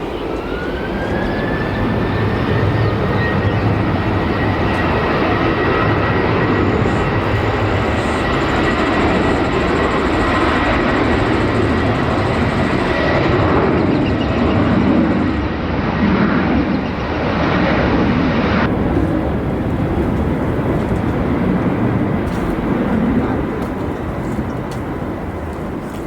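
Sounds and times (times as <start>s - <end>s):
jet engines at takeoff: 0.0s - 26.0s.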